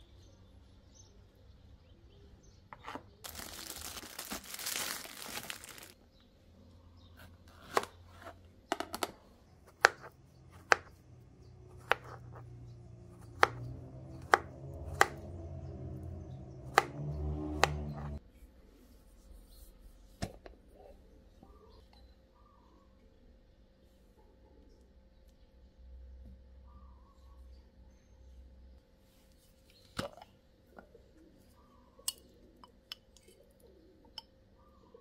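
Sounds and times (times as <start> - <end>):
packaging rustling: 3.2 - 6.0
knife chopping on cutting board: 9.7 - 10.9, 11.8 - 12.4, 13.3 - 15.2, 16.7 - 18.2.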